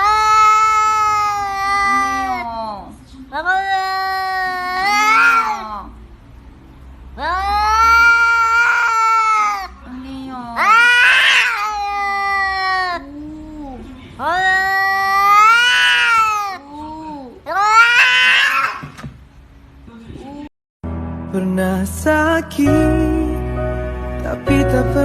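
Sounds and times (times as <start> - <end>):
cat yowling: 0.0 - 2.6, 3.4 - 6.0, 7.2 - 9.8, 10.6 - 18.9.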